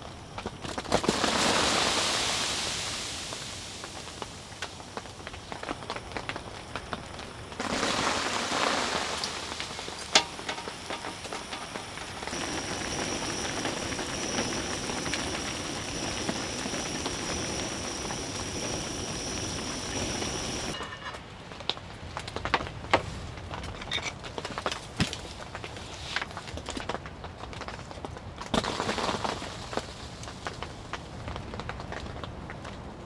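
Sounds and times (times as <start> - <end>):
rain patter: 0.0 - 20.8
thin high whine: 0.0 - 21.2.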